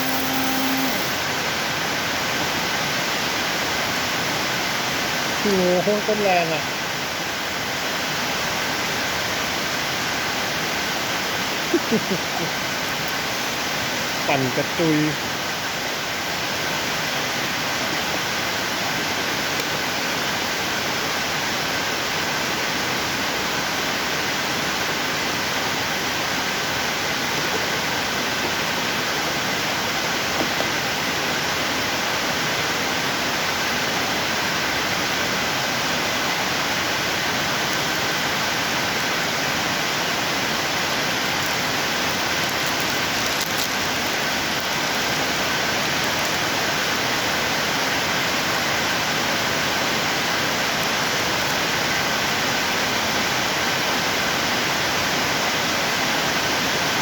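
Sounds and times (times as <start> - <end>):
coffee beans being ground: 0.0 - 1.3, 40.8 - 46.6
grinder motor whining: 0.0 - 1.4.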